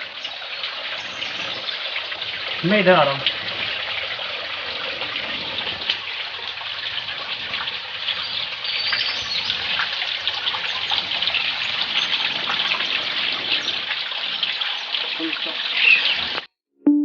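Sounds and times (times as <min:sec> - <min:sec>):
stream water rushing: 0:00.0 - 0:16.2
small water splashes: 0:00.0 - 0:16.5.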